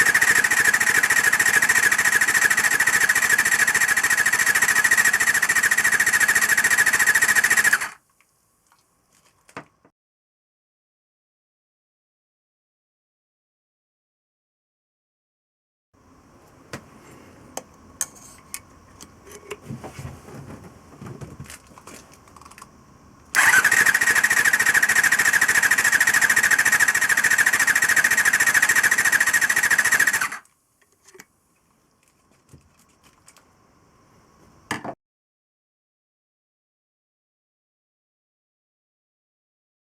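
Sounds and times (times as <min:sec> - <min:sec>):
engine starter cranking: 0:00.0 - 0:08.0, 0:23.3 - 0:30.4.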